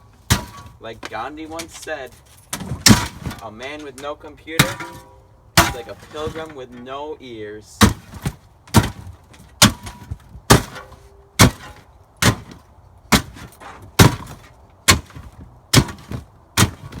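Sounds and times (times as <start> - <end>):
heavy blows smashing a laptop: 0.3 - 1.8, 2.5 - 3.9, 4.6 - 6.6, 7.8 - 17.0
cracking knocks: 7.8 - 17.0.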